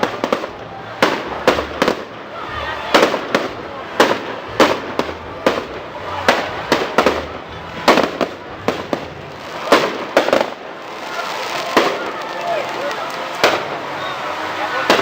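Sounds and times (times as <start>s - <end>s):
fireworks bangs echoing: 0.0s - 15.0s.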